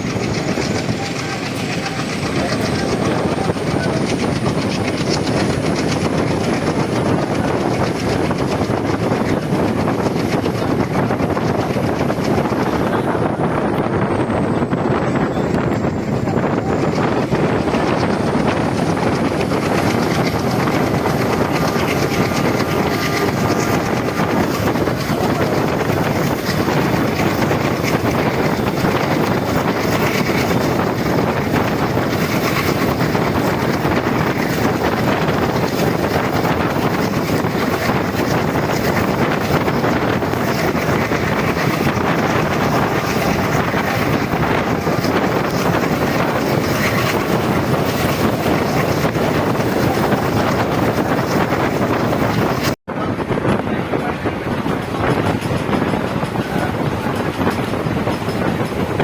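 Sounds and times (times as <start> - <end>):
train wheels rumbling on rails: 0.0 - 59.0
wind buffeting microphone: 0.0 - 59.0.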